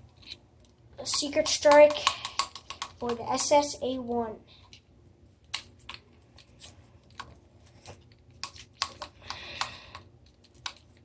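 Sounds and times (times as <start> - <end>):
plastic toy clicks and knocks: 1.1 - 3.5.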